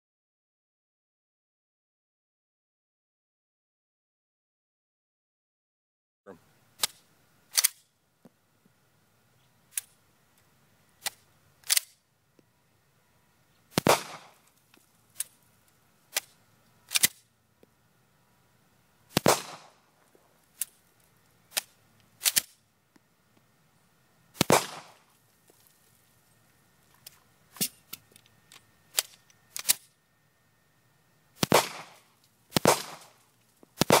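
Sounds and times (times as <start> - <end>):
gunshots: 13.7 - 14.4, 19.1 - 19.8, 24.4 - 25.1, 31.4 - 33.2, 33.8 - 34.0
sharp clicks: 27.0 - 29.9.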